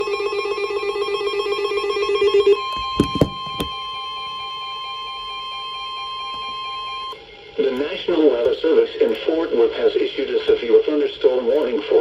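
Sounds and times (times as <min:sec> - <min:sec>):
two-tone attention signal: 0:00.0 - 0:07.6.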